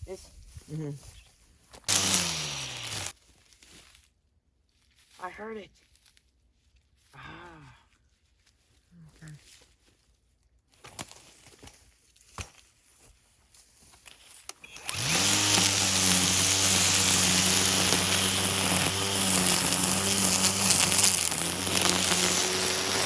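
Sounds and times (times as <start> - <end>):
small gasoline engine starting: 1.9 - 3.1, 14.6 - 23.0.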